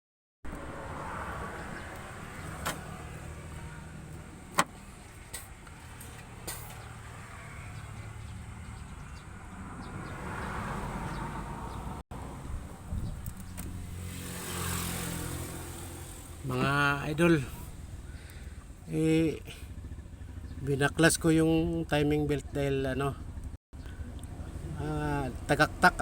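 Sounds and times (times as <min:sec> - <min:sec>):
diesel engine running: 0:00.8 - 0:10.3, 0:15.7 - 0:20.7.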